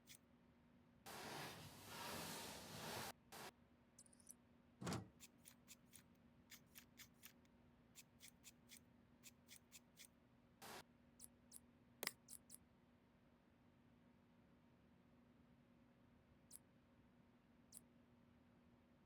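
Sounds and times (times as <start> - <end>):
short scrape: 1.1 - 3.2.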